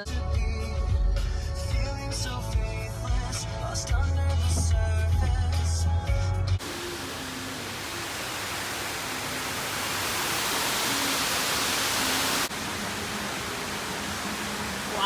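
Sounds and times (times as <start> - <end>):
steady rushing noise: 6.6 - 15.0.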